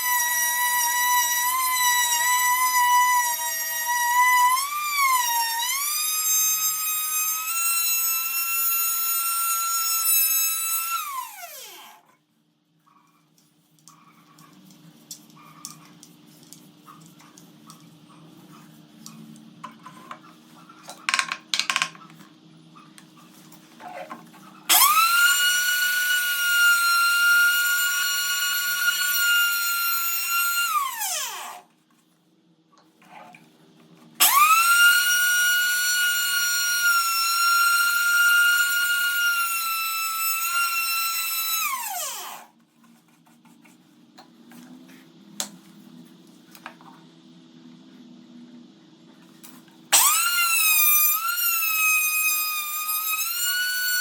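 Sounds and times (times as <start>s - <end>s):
small clicks and knocks: 20.9s - 22.3s
power tool motor whining: 24.7s - 31.6s, 34.2s - 42.5s, 49.9s - 54.0s.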